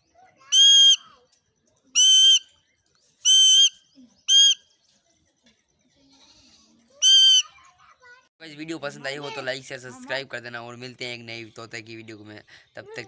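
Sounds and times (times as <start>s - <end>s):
parrot shrill calls: 0.5s - 1.1s, 2.0s - 2.5s, 3.2s - 4.6s, 7.0s - 7.5s.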